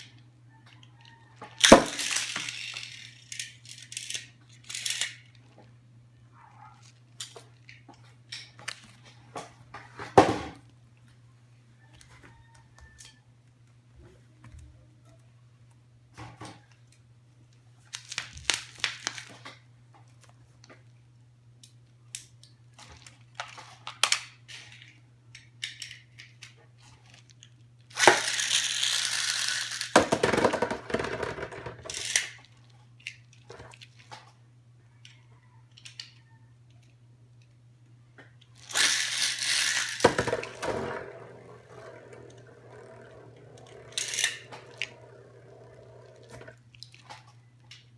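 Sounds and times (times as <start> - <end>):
packaging tearing: 38.7 - 40.0.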